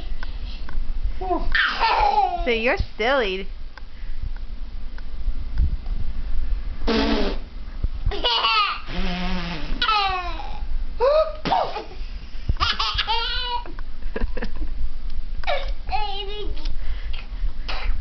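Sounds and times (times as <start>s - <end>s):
small child squealing laughter: 1.4s - 2.3s.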